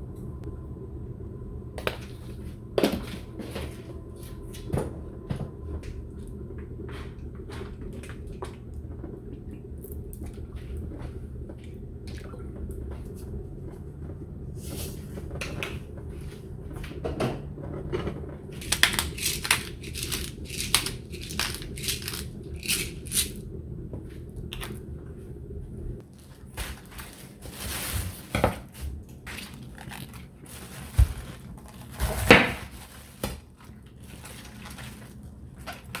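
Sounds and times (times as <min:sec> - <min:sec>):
steady low hum: 0:00.0 - 0:36.0
utensils and cookware clattering: 0:18.6 - 0:23.4.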